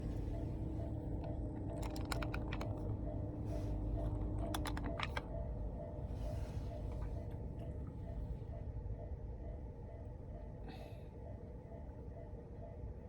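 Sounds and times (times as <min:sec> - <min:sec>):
low train rumble: 0:00.0 - 0:13.0.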